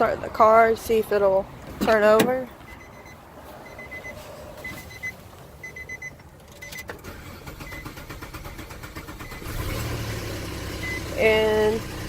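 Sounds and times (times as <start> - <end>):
car warning chime beeping: 0.9 - 9.7, 10.7 - 11.8
starter motor cranking engine: 6.7 - 12.0.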